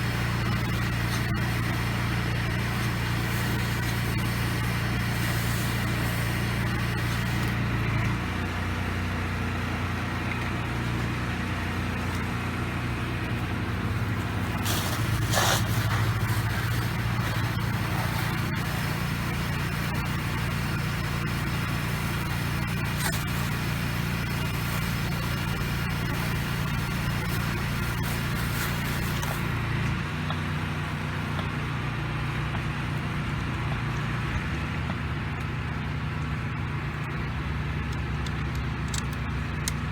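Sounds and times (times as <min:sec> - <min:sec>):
water spraying hiss: 0:00.0 - 0:08.0, 0:13.3 - 0:29.6
pressure washer engine running: 0:00.0 - 0:31.2.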